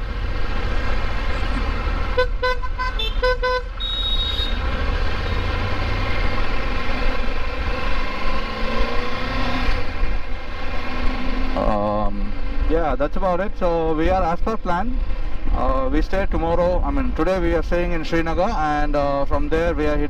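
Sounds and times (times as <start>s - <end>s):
road traffic rumble: 0.0s - 20.0s
vehicle horn short beeps: 2.2s - 4.6s.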